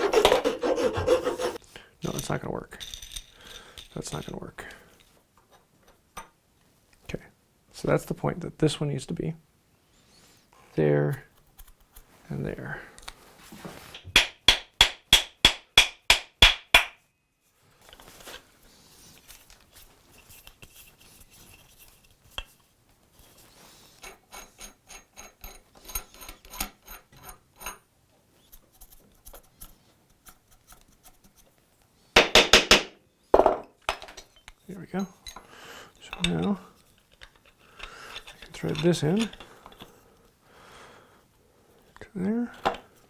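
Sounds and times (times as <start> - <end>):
scraping: 0.0 - 1.6.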